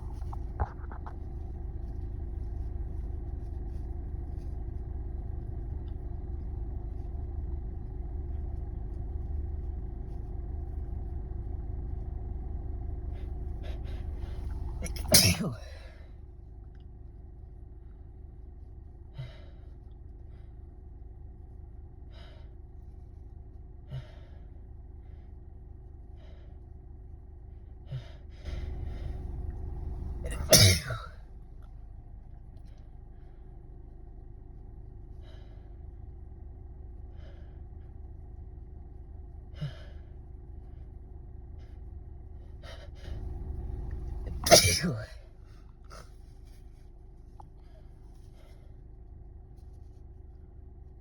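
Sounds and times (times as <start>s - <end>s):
steady low hum: 0.0s - 51.0s
person gasping breaths: 19.1s - 20.6s, 23.9s - 25.4s, 27.9s - 29.3s, 39.5s - 40.2s
person gasping breathily: 30.3s - 31.1s, 39.6s - 40.1s.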